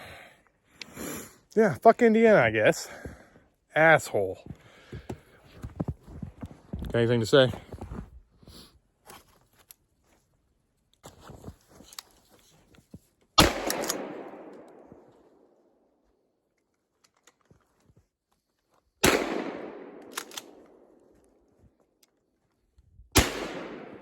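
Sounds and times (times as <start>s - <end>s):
gunshots with echo: 13.4s - 15.1s, 19.0s - 20.9s, 23.2s - 24.0s.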